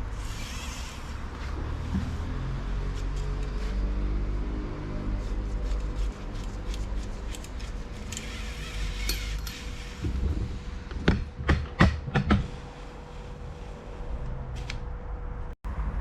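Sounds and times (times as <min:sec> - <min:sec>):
metal tools clinking: 0:08.0 - 0:09.8.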